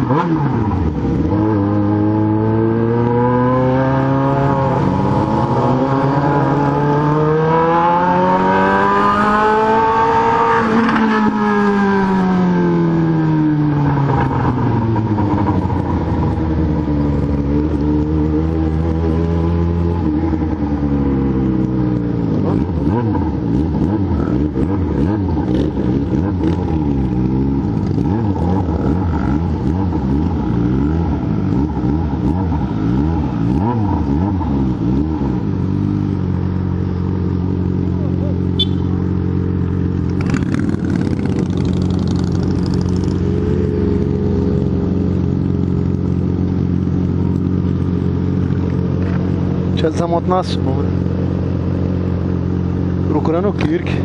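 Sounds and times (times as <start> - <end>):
motorcycle engines at low speed: 0.0 - 54.0
motorcycle engine idling: 35.5 - 54.0.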